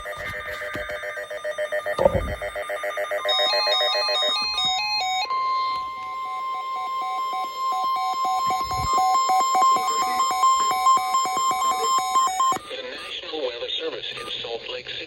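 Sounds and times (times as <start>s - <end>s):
emergency alert tones: 0.0s - 14.4s.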